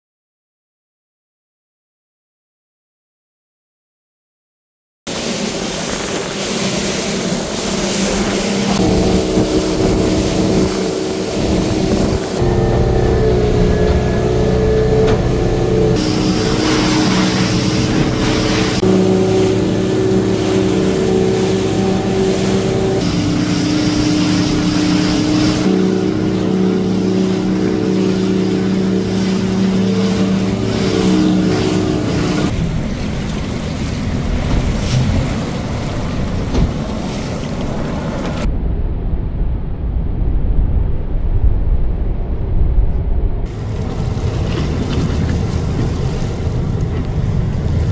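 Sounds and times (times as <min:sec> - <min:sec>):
boat motor humming: 0:05.1 - 0:38.5, 0:43.1 - 0:47.9
rushing wind: 0:05.1 - 0:47.9
water noise with low rumble: 0:05.1 - 0:47.9.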